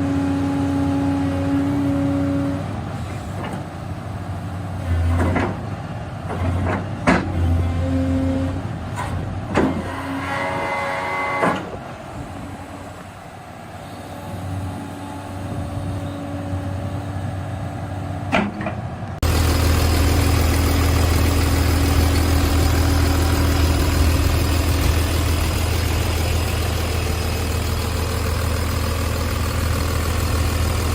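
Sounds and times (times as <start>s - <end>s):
excavator diesel engine idling: 13.8s - 30.9s.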